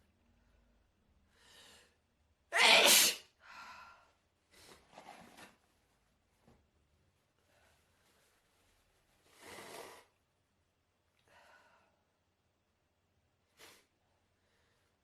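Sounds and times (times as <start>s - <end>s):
breathing: 1.3s - 2.0s, 3.4s - 4.8s, 11.2s - 12.1s, 13.6s - 15.0s
person sneezing: 2.6s - 3.3s.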